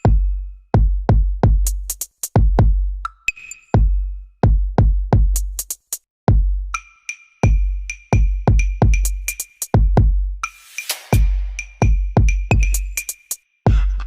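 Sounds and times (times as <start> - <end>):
electronic drum-machine music: 6.8 - 14.0.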